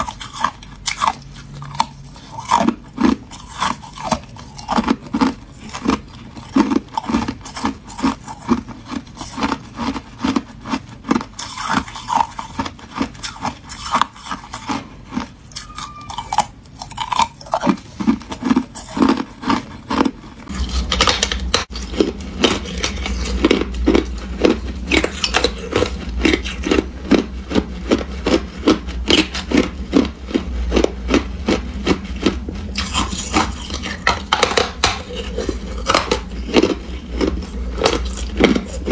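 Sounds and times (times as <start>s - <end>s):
ice being chewed: 0.0s - 38.9s
low hum: 14.4s - 38.9s.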